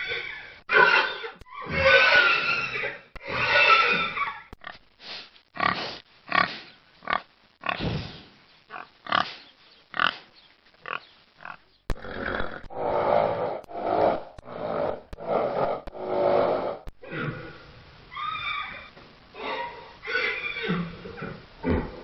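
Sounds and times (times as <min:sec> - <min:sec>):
animal grunts: 0:20.7 - 0:22.0.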